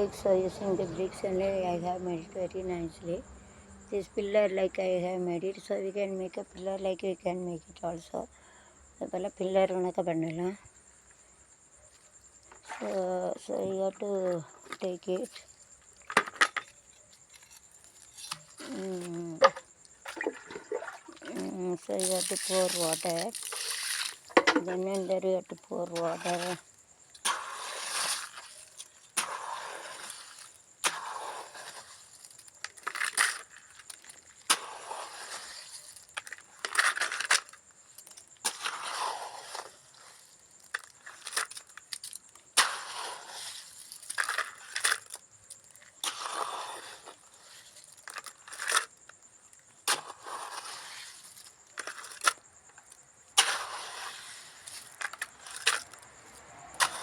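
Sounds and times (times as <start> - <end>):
trowel scraping mortar: 21.3 - 26.6, 27.2 - 37.6, 38.4 - 48.8, 49.8 - 52.4, 53.4 - 56.0, 56.8 - 57.0.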